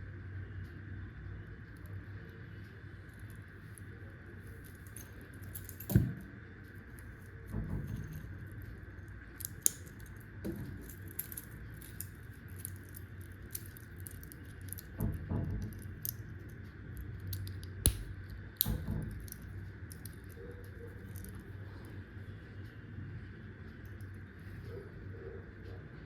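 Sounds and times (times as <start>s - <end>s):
faint background hum: 0.0s - 26.0s
metal watch bracelet clinking: 4.5s - 8.4s, 9.3s - 15.0s.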